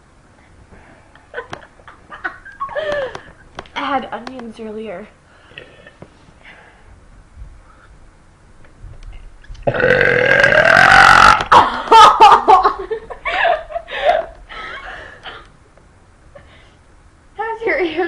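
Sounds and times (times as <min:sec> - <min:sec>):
girl burping: 0:09.7 - 0:11.6.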